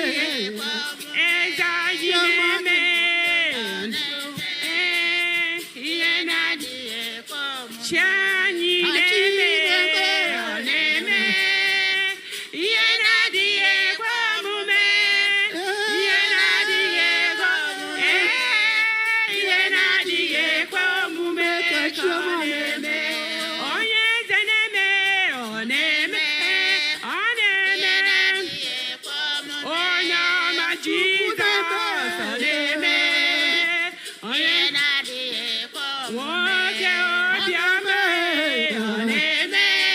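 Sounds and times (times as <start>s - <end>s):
voices singing with music: 0.0s - 39.9s.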